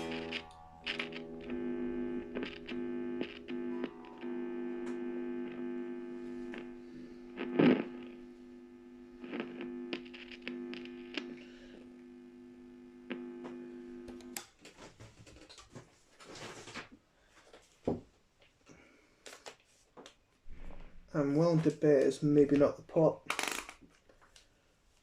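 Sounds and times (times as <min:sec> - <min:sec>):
clicks and handling noise: 0:00.0 - 0:03.9, 0:13.1 - 0:16.9
guitar amplifier mains hum: 0:00.0 - 0:14.4
crackles and pops: 0:00.0 - 0:14.6.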